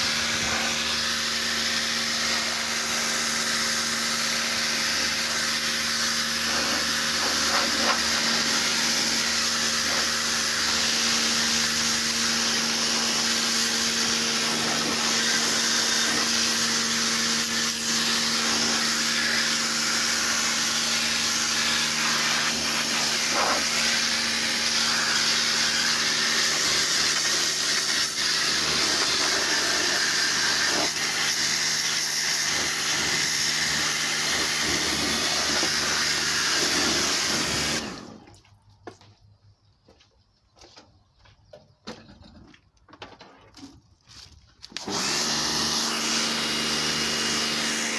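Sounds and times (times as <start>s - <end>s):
water jet spraying hiss: 0.0s - 16.7s, 17.5s - 31.5s
pressure washer motor hum: 0.0s - 38.4s, 44.6s - 47.9s.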